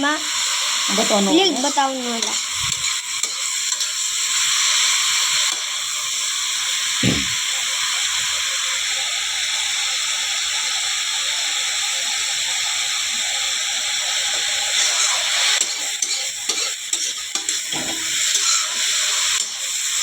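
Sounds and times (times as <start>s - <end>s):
vegetables sizzling in oil: 0.0s - 20.0s
low thump: 7.0s - 7.4s.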